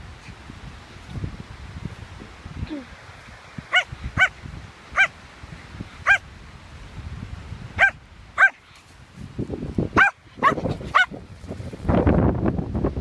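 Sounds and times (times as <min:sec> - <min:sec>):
wind noise on microphone: 0:00.0 - 0:13.0
dog barking: 0:03.7 - 0:04.3, 0:06.0 - 0:06.2, 0:07.8 - 0:08.6, 0:10.0 - 0:11.1.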